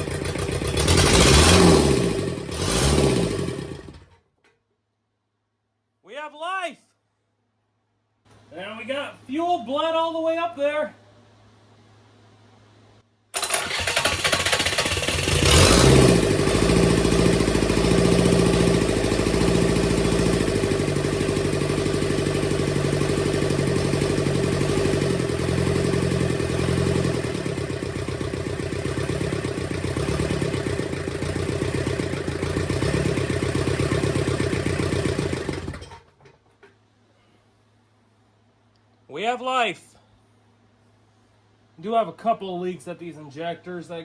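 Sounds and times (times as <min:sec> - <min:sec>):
diesel engine starting and running: 0:00.0 - 0:04.2, 0:13.4 - 0:36.3.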